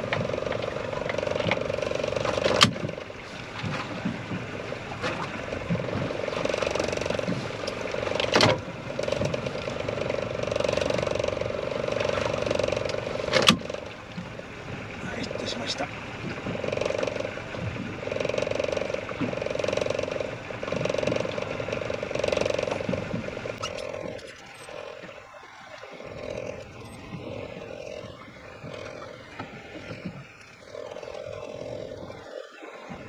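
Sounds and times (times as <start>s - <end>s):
fishing reel whirring: 18.0s - 33.0s.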